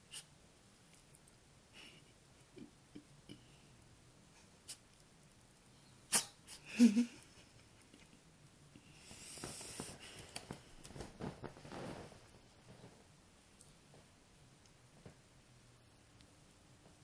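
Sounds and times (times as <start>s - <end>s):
cat sneezing: 6.1s - 6.7s.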